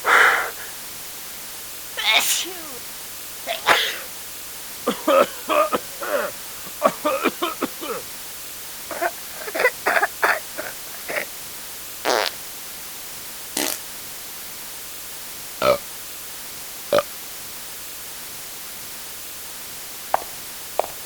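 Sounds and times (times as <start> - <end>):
fart-like blurts: 13.6 - 13.8.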